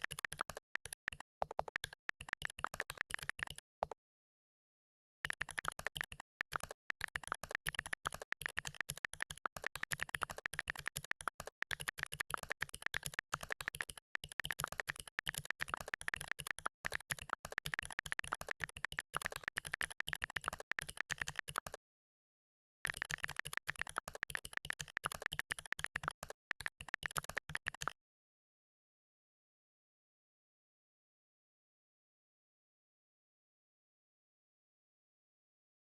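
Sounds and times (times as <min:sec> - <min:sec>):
rapid keyboard typing: 0:00.0 - 0:03.6, 0:05.3 - 0:21.8, 0:22.9 - 0:28.0.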